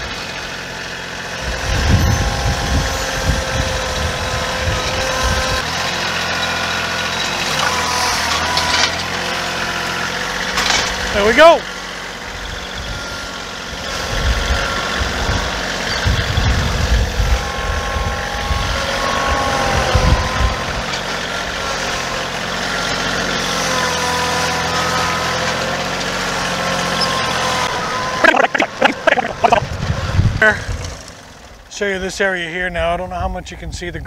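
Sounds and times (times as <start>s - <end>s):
motor engine idling: 24.4s - 32.6s.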